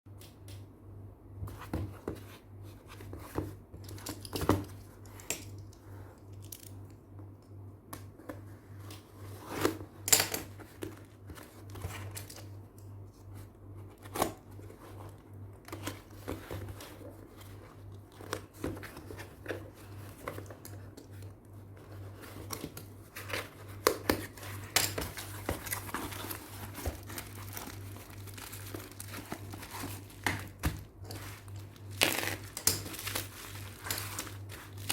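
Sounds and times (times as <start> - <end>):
plastic and paper crinkling: 21.8 - 34.9.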